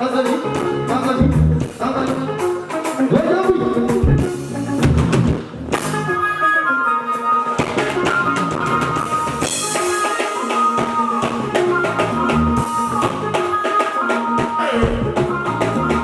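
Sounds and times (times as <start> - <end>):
drum kit beat: 0.0 - 6.2, 7.6 - 16.0
held keyboard chords: 0.0 - 16.0
bass line: 0.6 - 2.5, 3.2 - 6.3, 11.2 - 13.5, 14.8 - 16.0.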